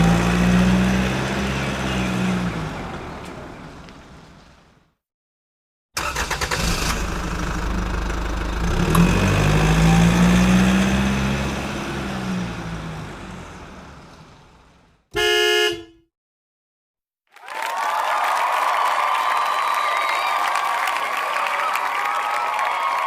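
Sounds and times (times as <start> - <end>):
car engine running and revving: 0.0 - 4.3, 6.9 - 15.0
car starter cranking: 6.0 - 9.1
car horn honk: 15.1 - 16.1.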